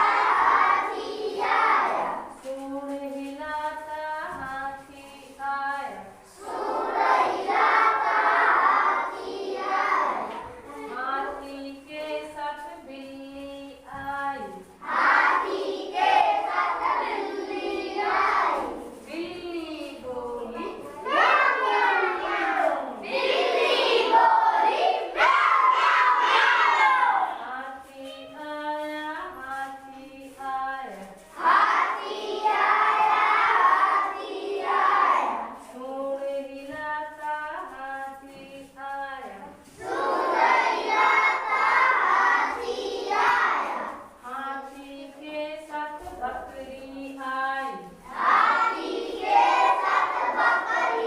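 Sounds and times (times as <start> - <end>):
children singing long notes: 0.0 - 2.4, 5.2 - 11.5, 13.9 - 19.1, 20.0 - 29.3, 31.2 - 35.8, 38.6 - 46.6, 47.6 - 51.0
children calling out together: 20.4 - 27.5.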